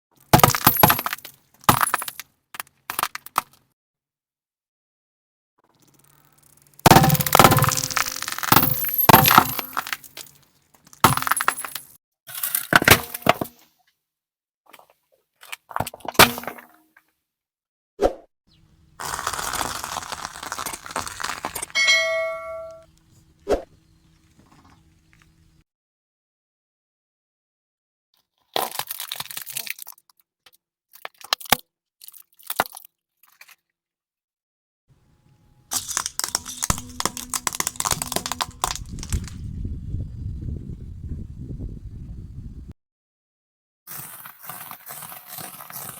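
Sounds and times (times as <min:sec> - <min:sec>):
objects cracking under car tyre: 0:00.2 - 0:03.6, 0:05.7 - 0:12.0, 0:19.0 - 0:21.8, 0:35.7 - 0:39.4
object crunching under tyre: 0:19.0 - 0:21.8, 0:35.7 - 0:39.4, 0:43.9 - 0:45.9.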